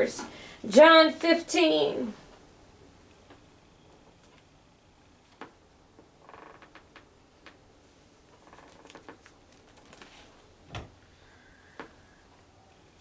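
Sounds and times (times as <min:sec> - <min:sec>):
short creaking rubs: 0:06.2 - 0:07.1, 0:08.3 - 0:10.5.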